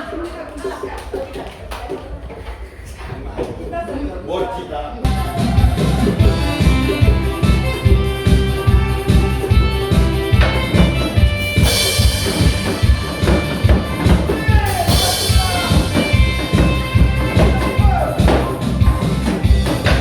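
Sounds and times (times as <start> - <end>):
drum kit beat: 5.1 - 20.0
cymbal crashes: 10.4 - 17.0.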